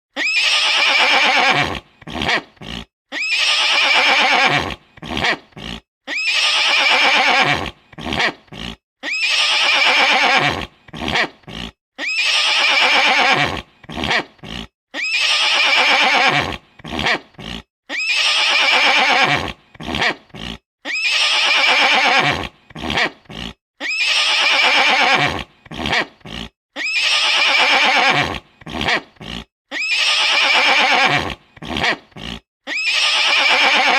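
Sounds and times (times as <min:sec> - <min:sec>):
horse neighing: 0:00.2 - 0:33.9
horse short sharp breaths: 0:01.9 - 0:02.9, 0:04.9 - 0:05.8, 0:07.8 - 0:08.8, 0:13.8 - 0:14.7, 0:16.8 - 0:17.7, 0:19.5 - 0:20.6, 0:25.6 - 0:26.5, 0:28.6 - 0:29.5.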